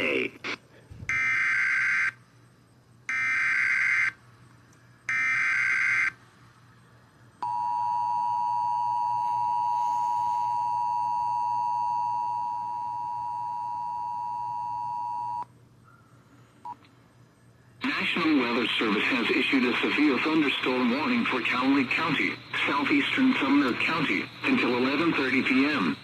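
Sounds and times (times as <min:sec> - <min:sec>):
screeching data bursts: 0:17.9 - 0:26.0.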